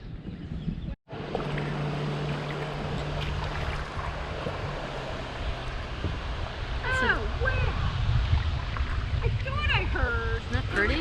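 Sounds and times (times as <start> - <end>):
wind on microphone: 0.0 - 11.0
river water rushing: 1.1 - 9.9.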